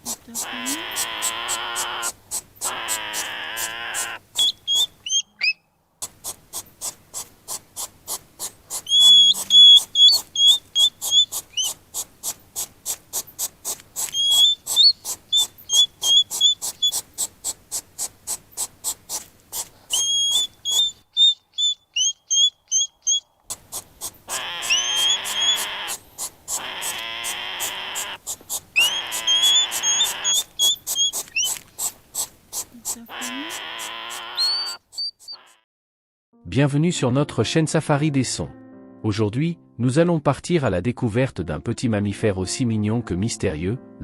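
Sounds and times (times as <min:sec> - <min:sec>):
hedgehog snuffling: 0:00.0 - 0:05.2, 0:06.0 - 0:35.6
high whistled squeaks: 0:03.9 - 0:05.6, 0:08.8 - 0:11.8, 0:14.1 - 0:17.0, 0:19.9 - 0:23.2, 0:24.3 - 0:26.0, 0:28.8 - 0:31.6, 0:33.2 - 0:35.6.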